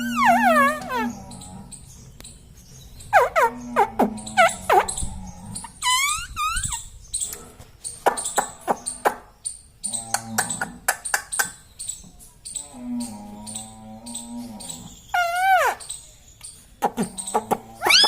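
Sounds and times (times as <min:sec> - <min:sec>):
parrot squawks: 0:00.0 - 0:01.2, 0:05.8 - 0:06.8, 0:15.2 - 0:15.9
parrot wavering call: 0:00.0 - 0:01.2, 0:05.8 - 0:06.8, 0:17.8 - 0:18.0
parrot clicks and chirps: 0:09.9 - 0:12.0.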